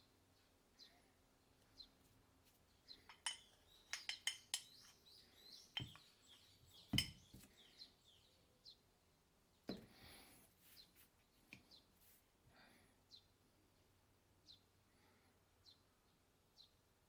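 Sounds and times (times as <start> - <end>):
faint bird chirps: 0.0 - 12.0, 12.6 - 17.0
metal tools clinking: 3.0 - 4.8.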